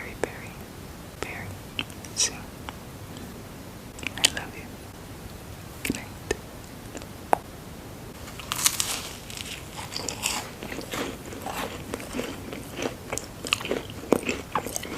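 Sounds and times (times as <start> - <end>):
crunchy bite: 8.2 - 14.9
crunchy chewing: 8.2 - 14.9.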